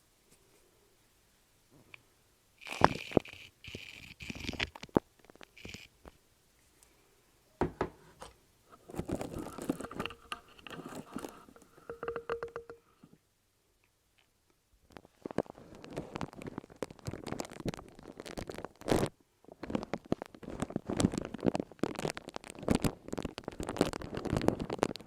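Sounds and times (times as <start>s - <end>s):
crackling handling sounds: 8.1s - 13.0s, 13.8s - 25.0s.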